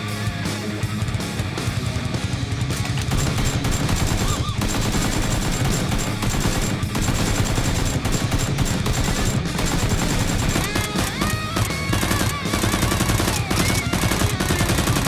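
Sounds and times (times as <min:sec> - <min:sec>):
rock music: 0:00.0 - 0:15.0
machine-gun bursts: 0:03.1 - 0:15.0.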